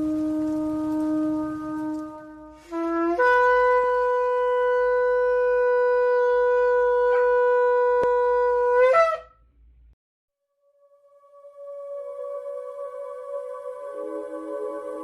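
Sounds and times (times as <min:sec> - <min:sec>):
shofar blast: 0:00.0 - 0:09.4.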